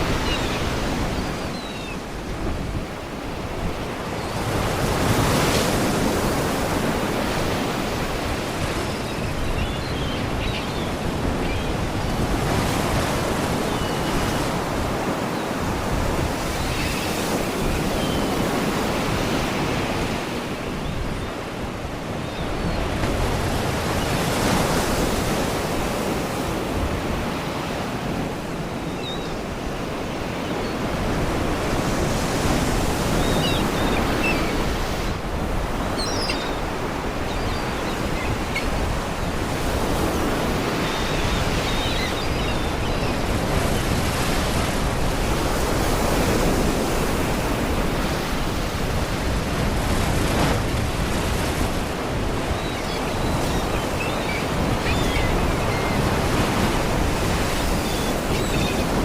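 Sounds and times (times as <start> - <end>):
faint seagull cries: 35.8 - 39.3.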